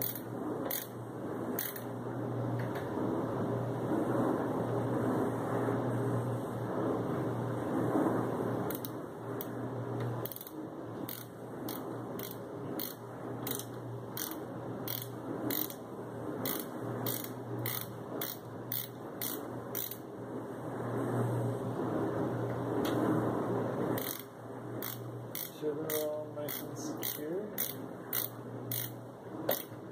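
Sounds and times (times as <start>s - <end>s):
steady low hum: 0.0s - 29.9s
screwdriver clicking: 24.8s - 29.8s.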